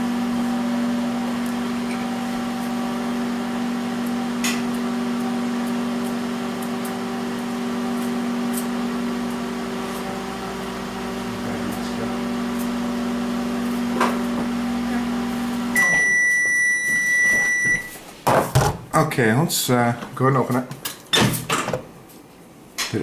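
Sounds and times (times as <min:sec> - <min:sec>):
microwave oven humming: 0:00.0 - 0:18.0.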